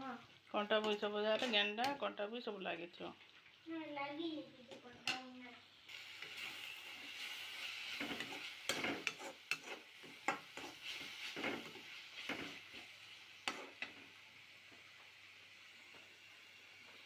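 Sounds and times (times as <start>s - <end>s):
food sizzling in a pan: 0.0s - 17.0s
spoon scraping a pan: 0.7s - 2.0s, 5.9s - 14.1s.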